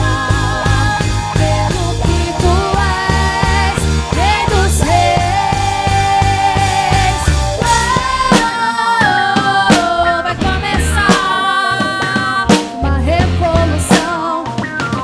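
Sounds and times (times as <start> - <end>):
long held melody line: 0.0 - 8.5
bass guitar: 0.0 - 15.0
drum kit: 0.0 - 15.0
electric guitar: 0.0 - 15.0.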